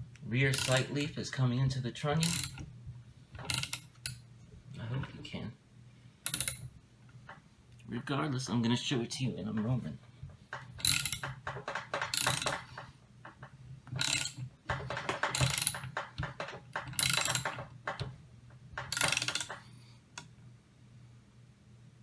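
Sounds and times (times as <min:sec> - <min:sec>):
ratchet wrench clicking: 0:00.5 - 0:00.9, 0:02.2 - 0:02.6, 0:03.4 - 0:04.2, 0:06.3 - 0:06.6, 0:10.8 - 0:12.8, 0:14.0 - 0:14.4, 0:15.0 - 0:17.6, 0:18.8 - 0:19.6.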